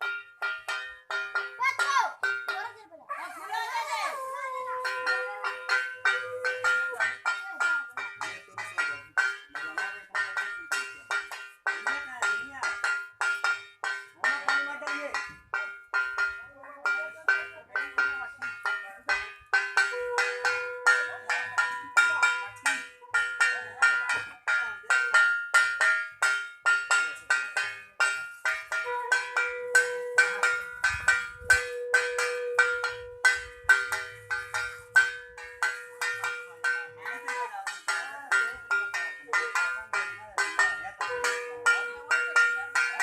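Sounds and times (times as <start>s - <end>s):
hand bell ringing rapidly: 4.7s - 43.0s
conch shell blown: 19.9s - 21.3s, 28.8s - 33.5s.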